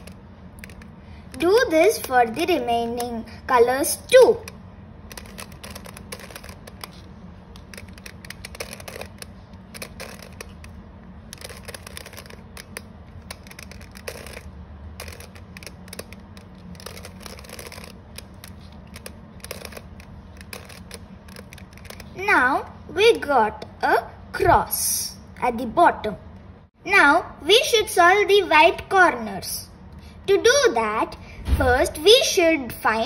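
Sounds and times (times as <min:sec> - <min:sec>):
low steady hum: 0:00.0 - 0:33.0
plastic cube clicking: 0:04.2 - 0:22.1.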